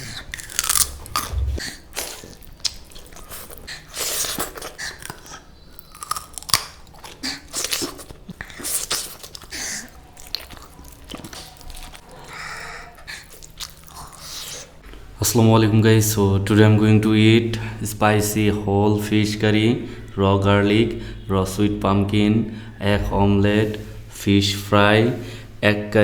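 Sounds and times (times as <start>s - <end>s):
person chewing crunchy food: 0.0s - 14.8s.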